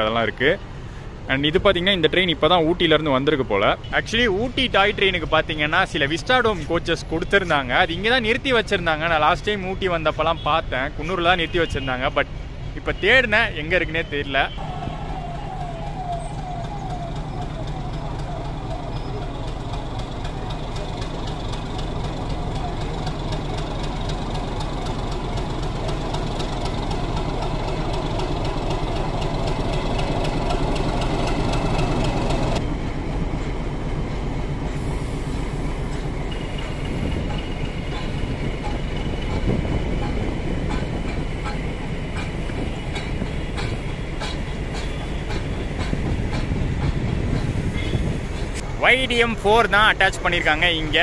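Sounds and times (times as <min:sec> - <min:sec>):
diesel locomotive engine hum: 0:00.0 - 0:51.0
train wheels clacking over joints: 0:14.6 - 0:32.6, 0:33.2 - 0:51.0.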